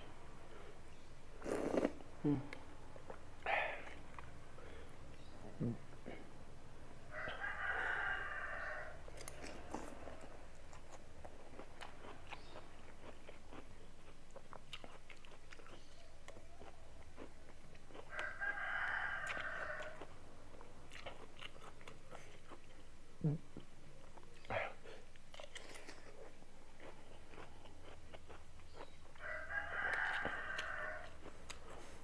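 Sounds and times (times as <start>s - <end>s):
rooster crowing: 7.1s - 10.4s, 17.9s - 20.1s, 29.1s - 31.8s
chewing crunchy food: 7.3s - 32.0s.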